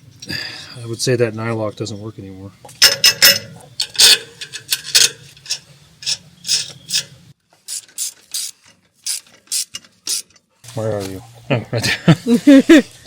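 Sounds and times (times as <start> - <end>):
ratchet wrench clicking: 7.7 - 10.4.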